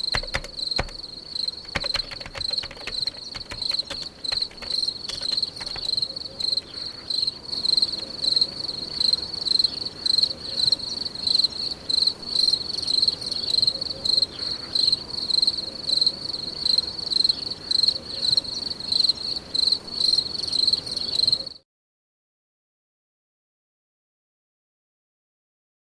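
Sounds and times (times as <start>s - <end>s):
cricket chirping: 0.0s - 14.2s.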